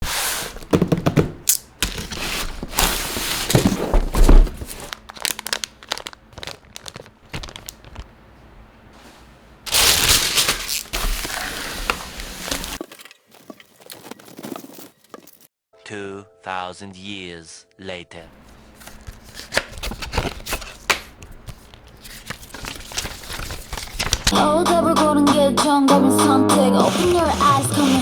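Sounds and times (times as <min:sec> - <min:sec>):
packaging crinkling and rustling: 0:00.5 - 0:08.2, 0:09.7 - 0:15.5, 0:18.3 - 0:24.4
packaging tearing: 0:04.6 - 0:08.1, 0:09.7 - 0:12.9, 0:18.8 - 0:24.4.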